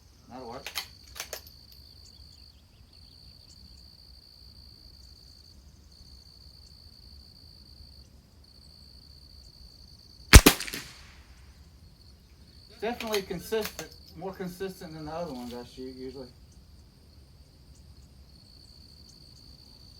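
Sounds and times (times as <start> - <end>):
crickets trilling: 0.1 - 11.0, 11.6 - 19.9
rifle shot: 10.3 - 11.2.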